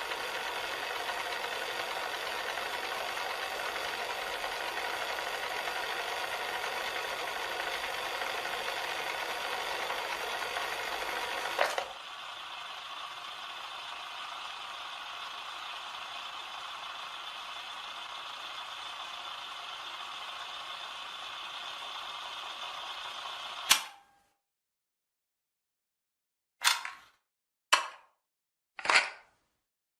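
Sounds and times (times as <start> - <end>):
tape mechanism whirring: 0.0 - 16.7
cassette player click: 23.7 - 24.0.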